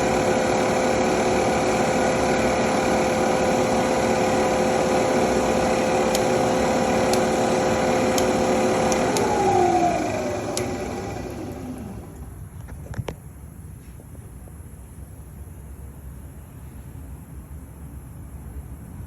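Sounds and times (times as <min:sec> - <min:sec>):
milling machine whining: 0:00.0 - 0:12.4.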